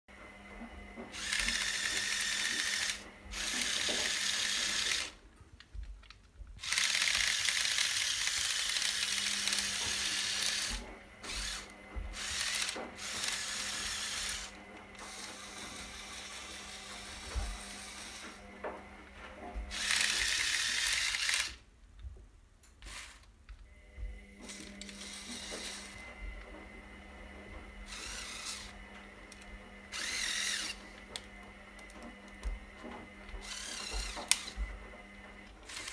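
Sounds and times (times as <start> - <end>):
toy motors and gears whirring: 1.1 - 18.4, 19.7 - 21.6, 22.8 - 23.4, 24.4 - 26.1, 27.8 - 32.6, 33.3 - 34.7, 35.4 - 35.9.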